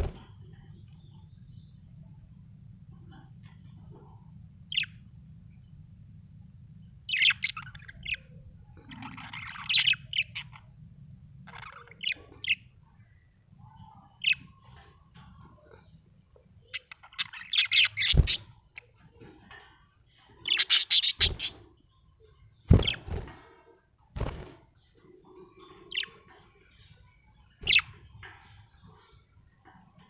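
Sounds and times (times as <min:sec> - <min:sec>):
faint low hum: 0:00.0 - 0:30.0
budgerigar chirping: 0:09.0 - 0:10.6, 0:16.7 - 0:18.8, 0:20.5 - 0:21.6.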